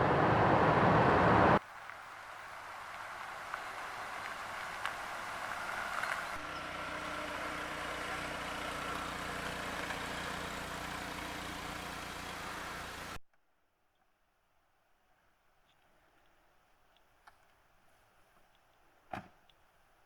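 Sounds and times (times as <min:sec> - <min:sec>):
vehicle engine running: 0:00.0 - 0:13.2.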